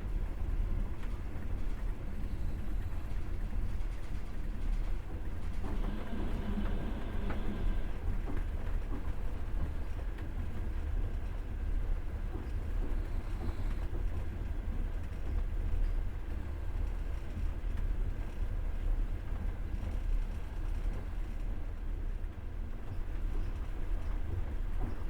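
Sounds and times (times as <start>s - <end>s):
train wheels rumbling: 0.1s - 14.7s.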